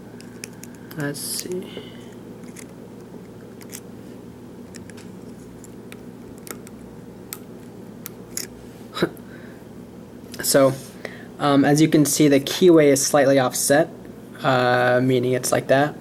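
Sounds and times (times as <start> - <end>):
lock pick clicking and scraping: 3.6 - 3.8.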